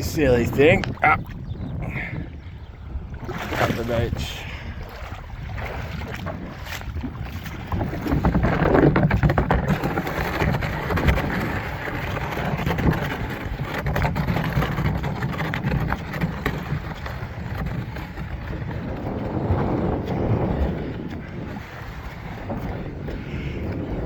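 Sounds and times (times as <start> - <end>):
plastic lid scraping over rocks: 0.0 - 0.9, 6.3 - 21.5
wind rumbling on microphone: 0.0 - 24.0.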